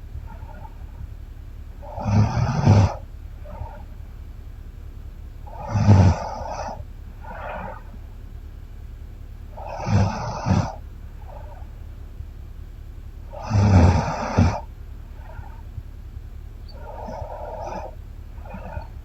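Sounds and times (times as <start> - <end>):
woman snoring: 2.0 - 3.0, 5.6 - 6.8, 9.7 - 10.8, 13.3 - 14.7
soft breath: 16.6 - 19.0.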